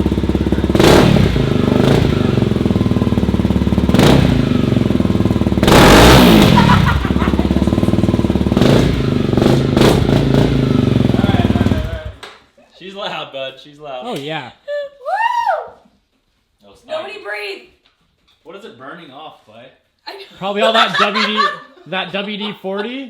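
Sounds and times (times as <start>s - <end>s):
motorcycle engine revving: 0.0s - 12.2s.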